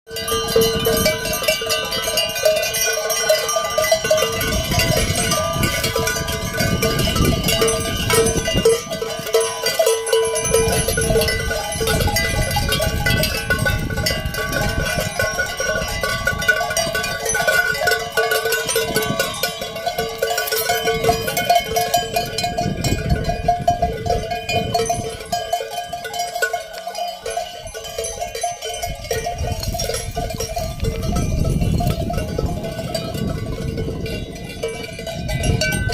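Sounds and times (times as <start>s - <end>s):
livestock bells clanking: 0.1s - 35.9s.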